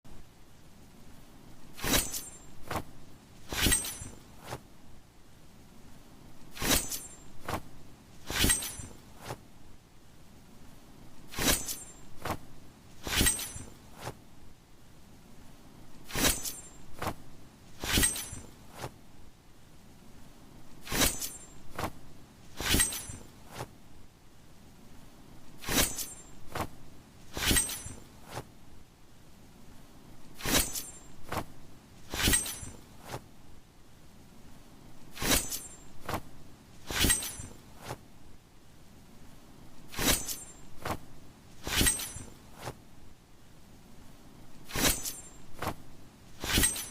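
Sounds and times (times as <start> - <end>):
metallic blade strokes ringing: 1.8 - 2.6, 3.5 - 4.2, 8.3 - 9.0, 13.0 - 13.8, 16.2 - 16.9, 17.8 - 18.5, 22.6 - 23.3, 27.4 - 28.0, 32.1 - 32.8, 36.9 - 37.6, 40.0 - 40.7, 41.6 - 42.3, 44.7 - 45.5, 46.4 - 46.9.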